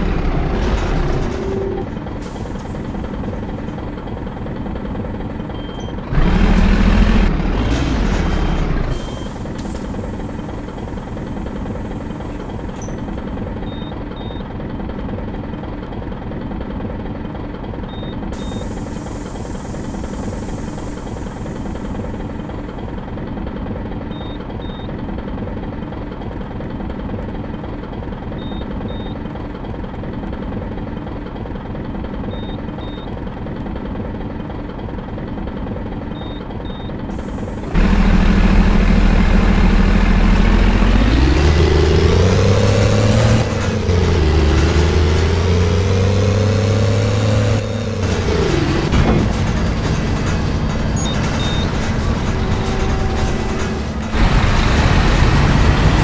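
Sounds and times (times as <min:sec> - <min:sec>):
bus diesel engine running: 0:00.0 - 0:56.0.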